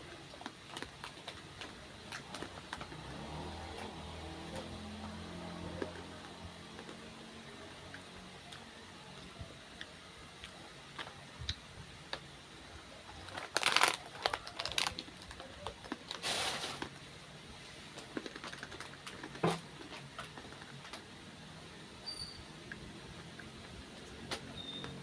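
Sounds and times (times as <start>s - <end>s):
crackly eating sounds: 0.0s - 21.9s, 22.5s - 25.0s
crackling bursts: 13.2s - 17.1s.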